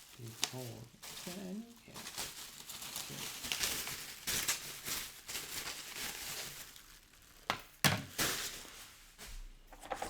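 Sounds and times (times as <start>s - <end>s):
soft rustle of foam parts: 8.3s - 10.0s.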